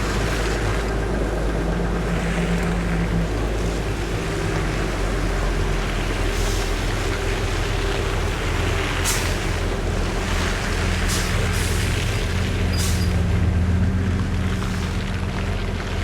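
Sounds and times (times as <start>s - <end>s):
heavy vehicle engine running: 0.0s - 16.0s.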